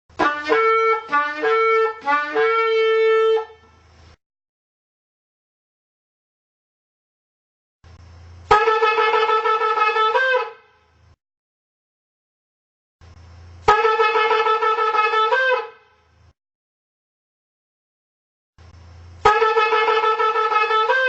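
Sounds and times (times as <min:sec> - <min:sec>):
shofar blast: 0:00.2 - 0:03.8, 0:08.5 - 0:10.8, 0:13.7 - 0:15.9, 0:19.2 - 0:21.0
faint low hum: 0:07.8 - 0:08.6, 0:13.0 - 0:13.7, 0:18.6 - 0:19.3.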